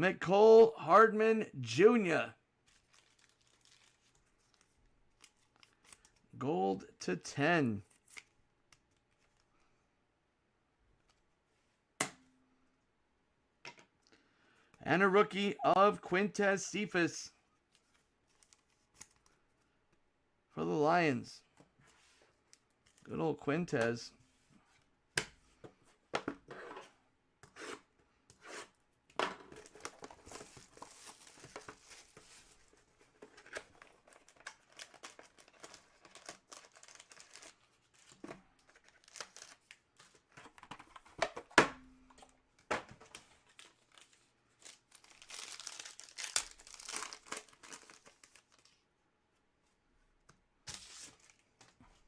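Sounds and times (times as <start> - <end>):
plastic wrapping torn and crinkled: 2.6 - 6.1, 33.7 - 38.1, 38.7 - 39.8, 43.4 - 48.8.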